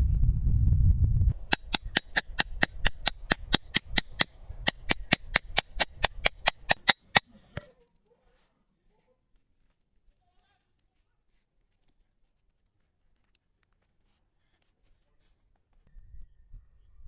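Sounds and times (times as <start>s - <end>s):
fast sharp knocks: 1.5s - 7.2s.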